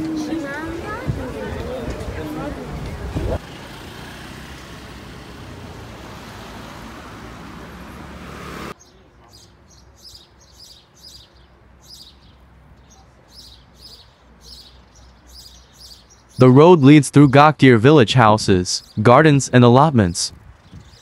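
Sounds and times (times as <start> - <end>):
small bird chirping: 8.8 - 16.4.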